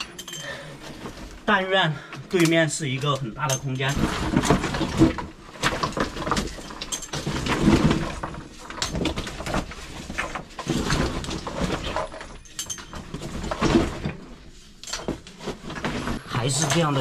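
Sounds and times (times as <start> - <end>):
hard breathing: 0.3 - 1.2
stones and gear scraping rock: 3.0 - 12.4, 15.3 - 17.0.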